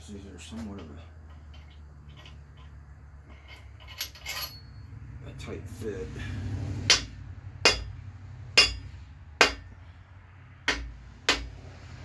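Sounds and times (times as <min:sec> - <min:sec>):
sharp metallic taps: 0:06.9 - 0:08.0, 0:08.6 - 0:09.7, 0:10.7 - 0:11.6.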